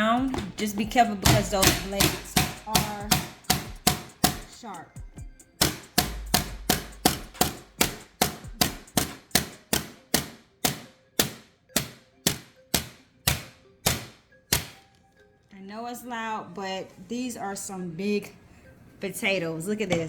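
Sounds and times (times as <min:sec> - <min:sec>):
fry cutter knocking through potato: 0:00.2 - 0:04.5, 0:05.6 - 0:14.8.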